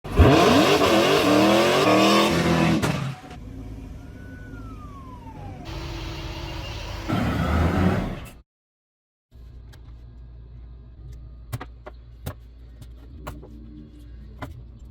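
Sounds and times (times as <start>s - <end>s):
car engine revving: 0.1s - 3.3s.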